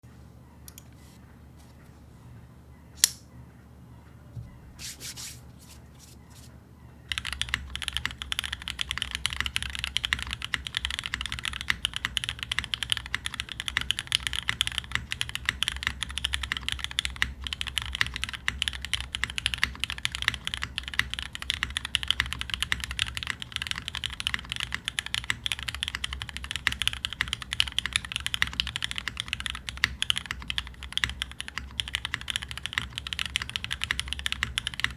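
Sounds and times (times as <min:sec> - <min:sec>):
mechanical keyboard typing: 0:07.1 - 0:34.9.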